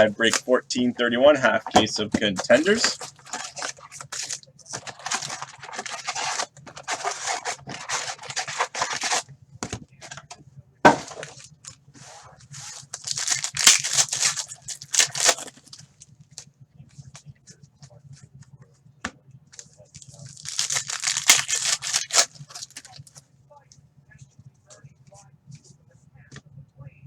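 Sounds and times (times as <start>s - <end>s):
plastic wrapping tearing and crinkling: 2.6s - 9.2s, 12.6s - 15.8s, 20.0s - 23.2s.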